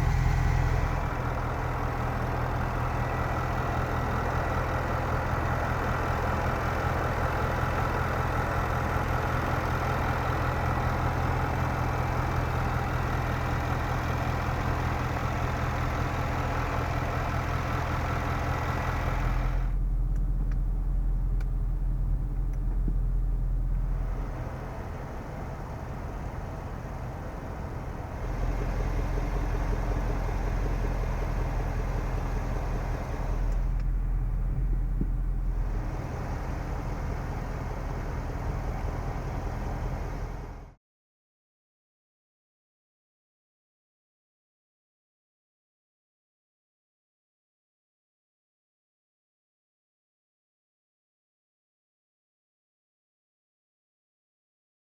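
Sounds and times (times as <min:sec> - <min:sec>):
car engine running: 0:00.0 - 0:40.8.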